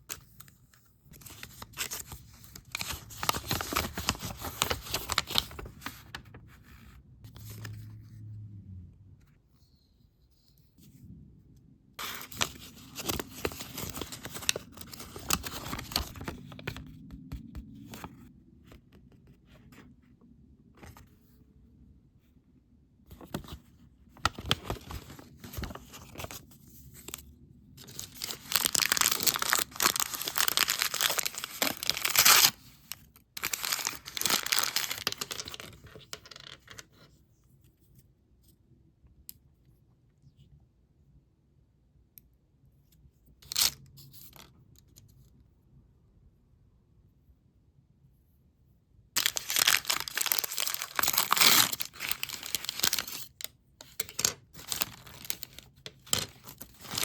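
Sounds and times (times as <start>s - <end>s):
packaging crinkling and tearing: 1.1s - 6.2s, 12.0s - 16.8s, 24.3s - 26.4s, 27.8s - 36.2s, 43.4s - 44.4s, 49.2s - 57.0s.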